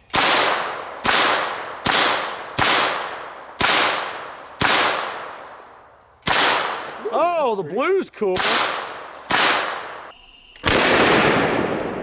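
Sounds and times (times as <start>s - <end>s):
gunshots with echoing tail: 0.1s - 5.5s, 6.3s - 7.0s, 8.4s - 10.1s, 10.7s - 12.0s.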